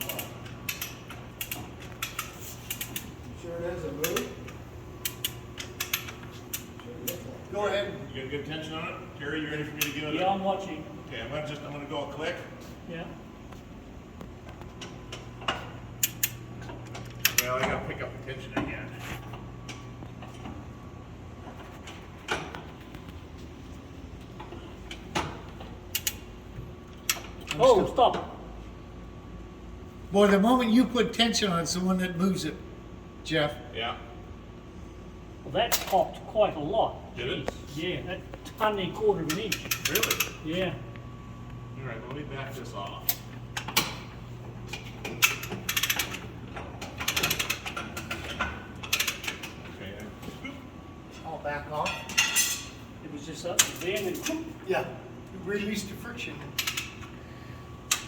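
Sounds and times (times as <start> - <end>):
ratchet clicking: 45.2 - 46.2.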